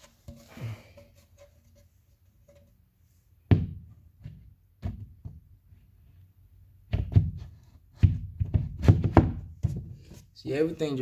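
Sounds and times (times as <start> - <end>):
wooden thuds and knocks: 3.5 - 5.6, 6.9 - 10.2.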